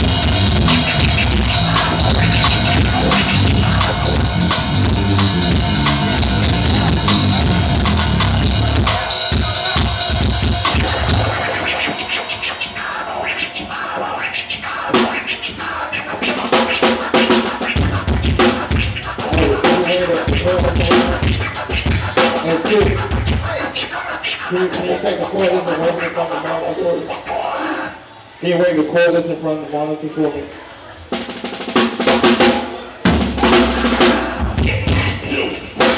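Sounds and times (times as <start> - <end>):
loose instrument notes: 0.0 - 23.6
live band playing: 0.0 - 28.0, 30.4 - 35.9
voices: 0.0 - 35.9.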